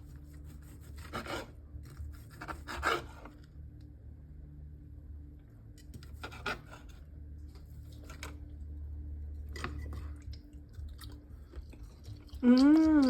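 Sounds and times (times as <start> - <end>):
steady low hum: 0.0 - 13.0
utensils scraping chopping board: 0.2 - 3.4, 6.0 - 7.0.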